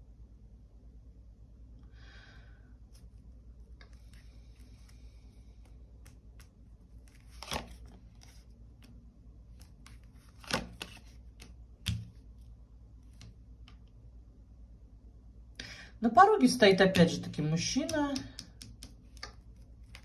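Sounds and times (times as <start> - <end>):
cards snapping: 5.6 - 8.4, 9.5 - 12.2, 17.9 - 20.0
ticks of card handling: 5.6 - 12.2.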